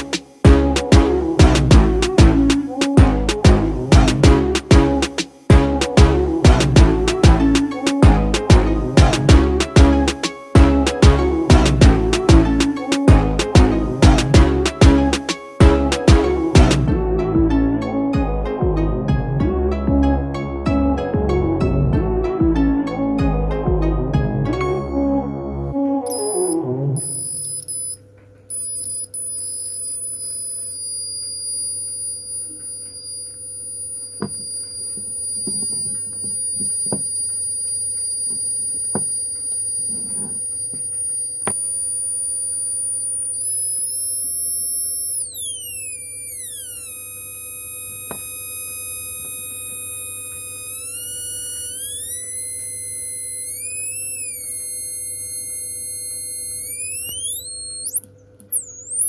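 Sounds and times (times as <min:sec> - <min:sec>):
electronic buzzer tone: 0:00.0 - 0:16.9, 0:26.0 - 0:59.0.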